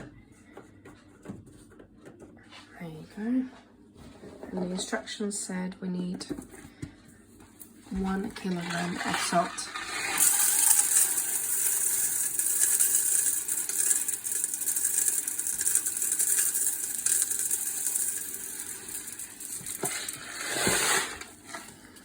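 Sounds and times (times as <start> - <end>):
salt pouring through funnel: 8.3 - 22.0.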